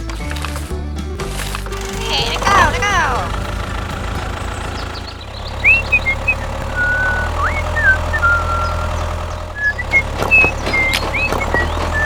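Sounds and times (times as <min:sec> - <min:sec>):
low engine hum: 0:00.6 - 0:12.0
short high chirping whistles: 0:05.6 - 0:09.0.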